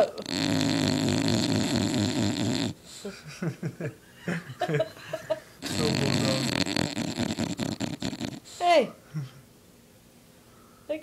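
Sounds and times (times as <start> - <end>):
dog snoring loudly: 0.0 - 3.0, 5.6 - 8.8
dog breathing and squeaking: 0.0 - 3.1, 5.6 - 8.8.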